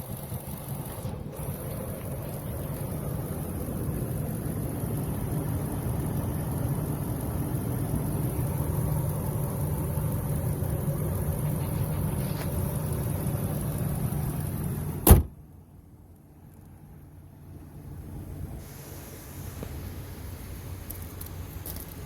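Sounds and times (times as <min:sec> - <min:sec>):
truck engine idling: 0:00.0 - 0:22.0
loud sharp thump: 0:15.0 - 0:15.4.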